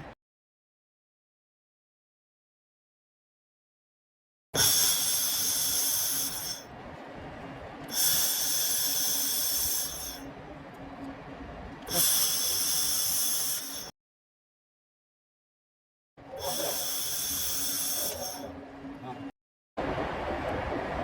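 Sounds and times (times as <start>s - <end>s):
laser welder hissing: 4.6s - 6.6s, 7.9s - 10.3s, 11.9s - 13.9s, 16.4s - 18.5s
faint machine hum: 4.6s - 13.9s, 16.2s - 21.0s.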